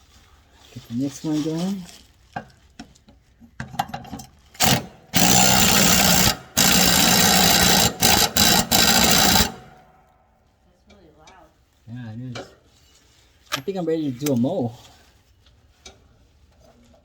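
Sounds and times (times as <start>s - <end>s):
impact driver hammering: 4.6s - 9.9s.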